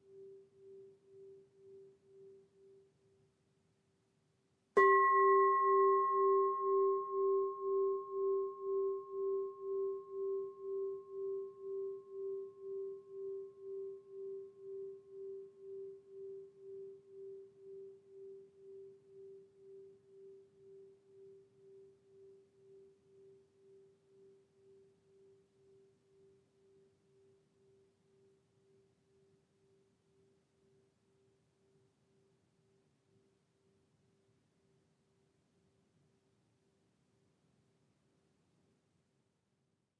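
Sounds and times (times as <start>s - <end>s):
singing bowl ringing: 4.8s - 25.4s.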